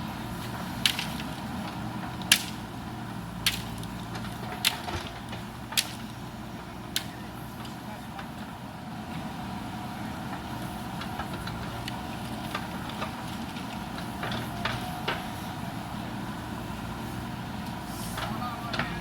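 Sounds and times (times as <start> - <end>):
backhoe diesel engine running: 0.0 - 19.0
sharp knocks and cracks: 0.8 - 2.6, 3.4 - 6.2.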